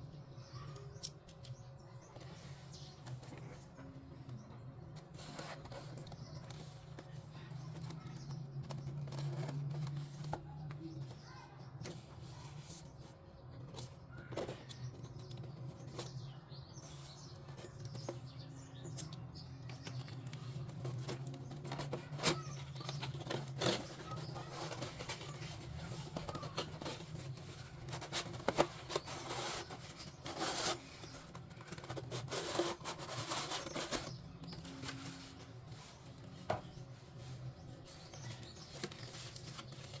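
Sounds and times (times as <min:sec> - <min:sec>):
packaging rustling: 0:20.0 - 0:40.0.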